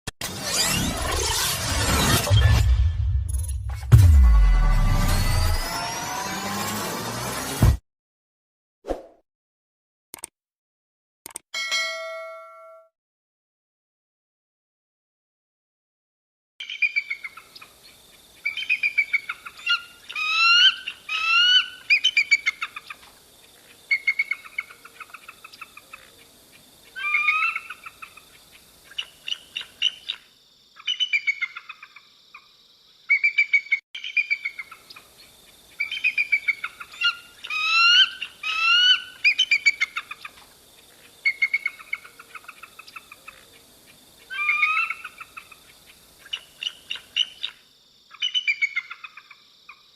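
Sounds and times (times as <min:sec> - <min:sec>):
eagle calling: 0:35.8 - 0:40.4, 0:44.3 - 0:45.6.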